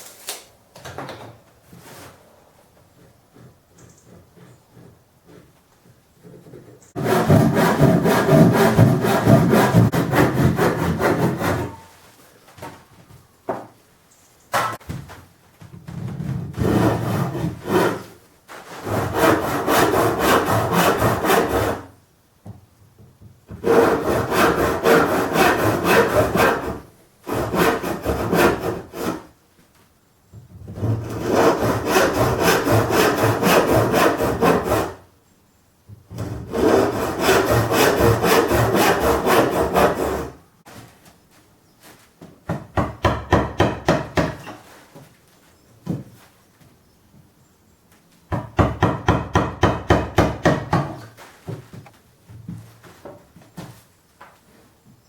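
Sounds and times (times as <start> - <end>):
saw cutting through wood: 7.0 - 11.8, 16.6 - 21.9, 23.6 - 29.3, 30.8 - 35.0, 36.2 - 40.4.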